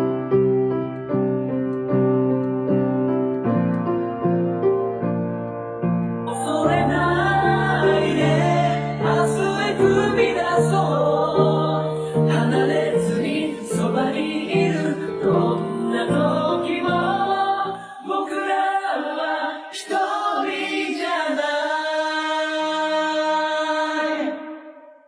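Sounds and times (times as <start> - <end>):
group of voices singing: 6.3 - 25.0.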